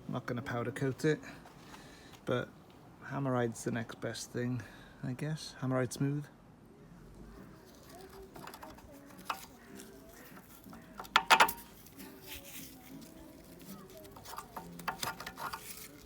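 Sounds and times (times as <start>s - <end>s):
hand tools knocking on metal: 11.0s - 11.7s.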